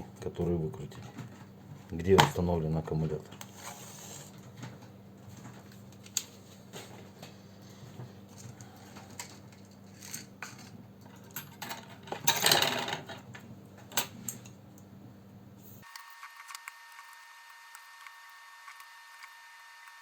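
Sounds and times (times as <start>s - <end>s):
handling scrape: 3.5s - 4.4s.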